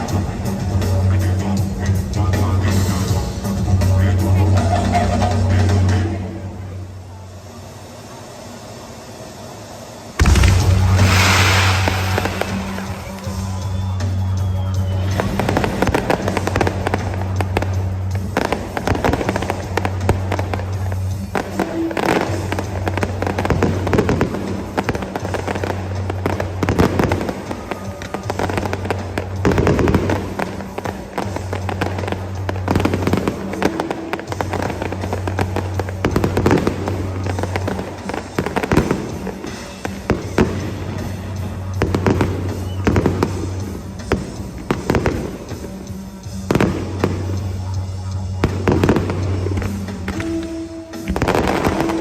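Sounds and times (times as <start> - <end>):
fireworks bursting: 10.2 - 14.2, 26.6 - 41.2, 48.4 - 52.0.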